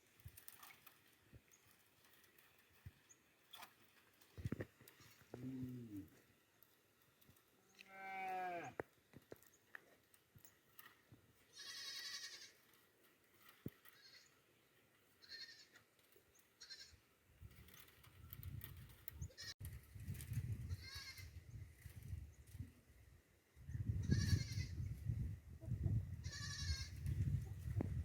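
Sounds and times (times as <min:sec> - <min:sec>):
goats bleating: 0:07.8 - 0:08.8, 0:11.5 - 0:12.6.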